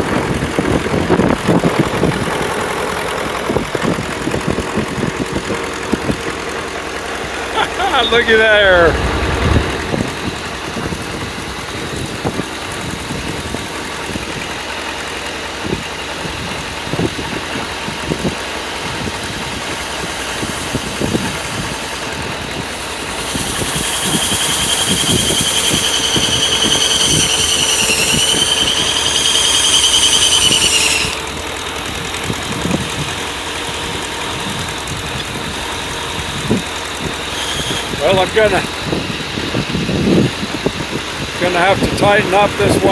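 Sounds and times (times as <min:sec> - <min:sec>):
high whine: 0:00.0 - 0:12.4
sawmill engine running: 0:00.0 - 0:42.9.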